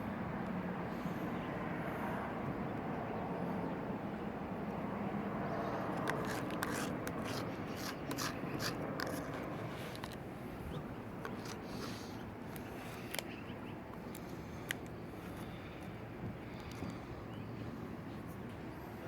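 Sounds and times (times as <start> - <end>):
hand tools clicking and scraping: 5.8 - 10.2, 11.2 - 13.3.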